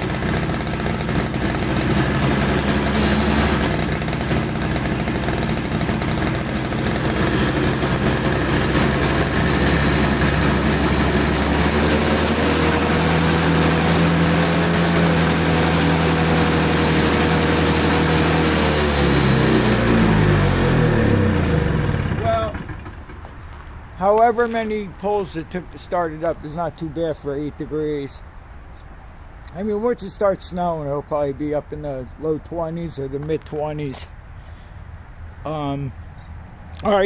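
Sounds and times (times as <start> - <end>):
snowblower engine running: 0.0 - 23.6.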